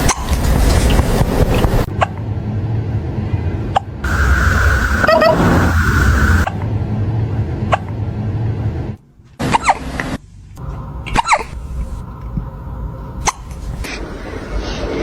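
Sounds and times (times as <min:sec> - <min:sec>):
steady noise: 0:04.0 - 0:06.5.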